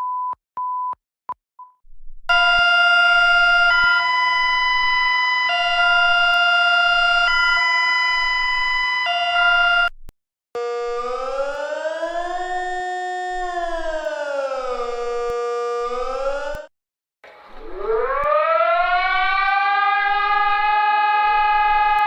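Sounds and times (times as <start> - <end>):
siren wail rising in pitch: 2.3 - 9.9, 10.6 - 16.7, 17.4 - 22.0
two-pitch alert alarm chord: 2.3 - 9.9.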